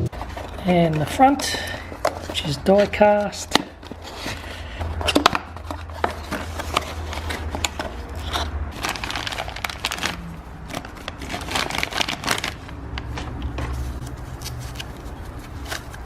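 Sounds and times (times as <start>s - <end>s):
packaging crinkling: 5.1s - 13.2s.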